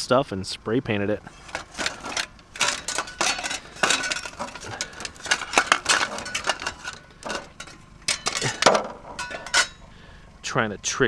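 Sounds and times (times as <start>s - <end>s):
metal objects clinking: 1.3s - 9.9s.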